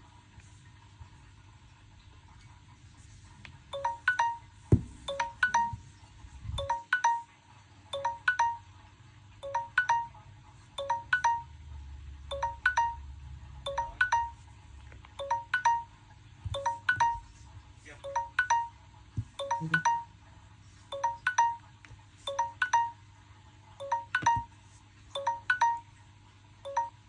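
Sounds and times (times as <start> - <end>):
phone ringing with rising chime: 3.8 - 5.9, 8.0 - 8.7, 9.4 - 10.2, 10.8 - 11.6, 12.3 - 13.1, 13.7 - 14.4, 15.2 - 16.0, 16.6 - 17.3, 18.0 - 18.8, 19.4 - 20.2, 22.3 - 23.0, 23.8 - 24.5, 25.2 - 25.9, 26.7 - 27.0.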